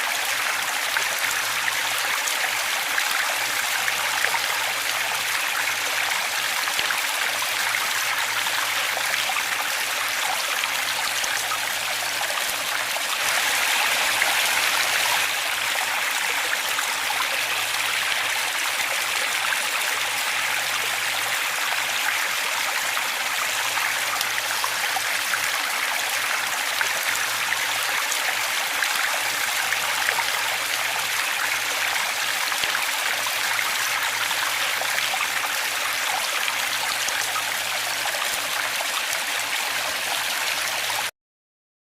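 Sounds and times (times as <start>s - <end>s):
waterfall rushing and splashing: 0.0s - 41.1s.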